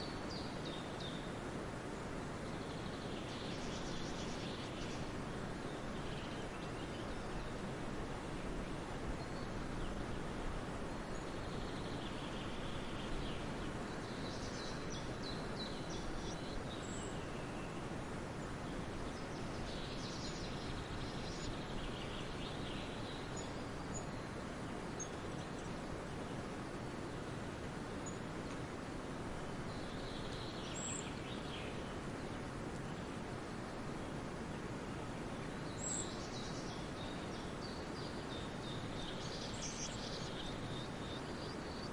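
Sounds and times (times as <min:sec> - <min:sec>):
outdoor background noise: 0:00.0 - 0:41.9
small birds chirping: 0:08.2 - 0:28.7, 0:29.4 - 0:34.2, 0:34.8 - 0:41.9.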